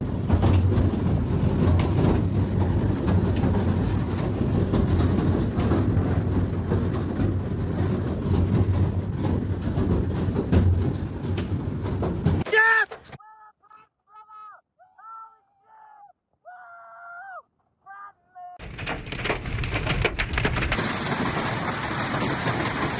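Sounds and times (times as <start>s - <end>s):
heavy low rumble: 0.0s - 12.4s, 18.6s - 22.9s
strong wind roaring: 0.0s - 12.4s.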